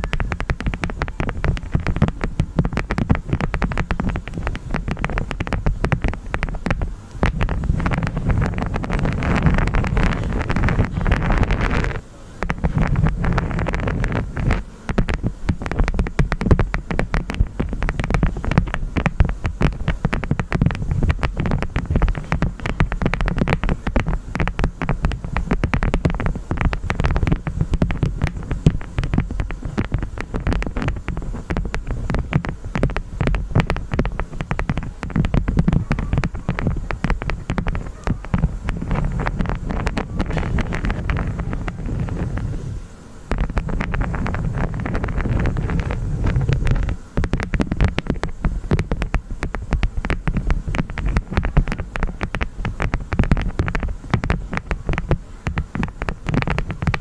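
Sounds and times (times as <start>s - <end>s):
honeycomb wax crunching: 0.0s - 57.0s
wind rumble on microphone: 0.0s - 57.0s.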